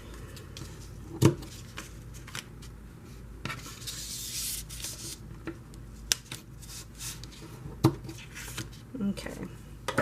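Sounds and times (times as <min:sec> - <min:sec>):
paper rubbing and sliding: 0:03.5 - 0:05.2.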